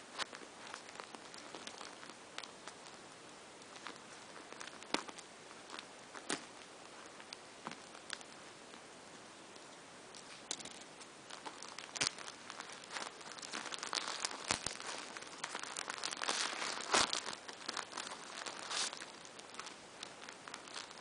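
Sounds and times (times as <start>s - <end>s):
packaging crinkling and tearing: 0.1s - 8.4s, 10.1s - 21.0s.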